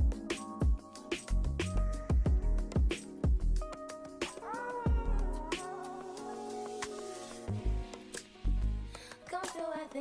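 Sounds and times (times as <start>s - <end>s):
electronic rnb beat: 0.0s - 8.4s
crisp hi-hats: 0.0s - 8.5s
deep kick drum: 1.4s - 3.6s, 4.9s - 5.2s.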